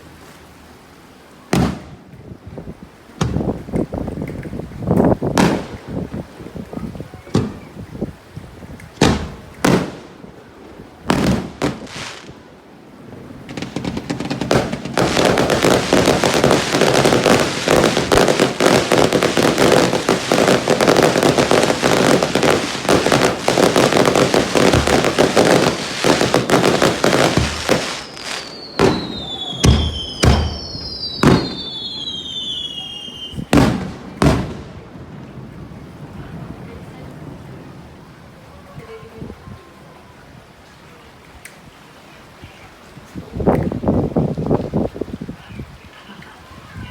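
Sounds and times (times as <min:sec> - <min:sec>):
fireworks crackling barrage: 0:01.5 - 0:02.0, 0:05.3 - 0:06.4, 0:09.0 - 0:36.5
firework shell bursts: 0:13.5 - 0:32.6
falling firework whistles: 0:13.5 - 0:34.6.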